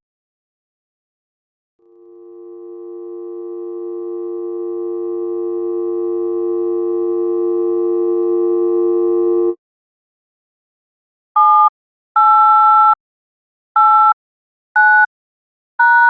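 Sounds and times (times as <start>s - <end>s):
telephone dial tone: 1.9s - 9.6s.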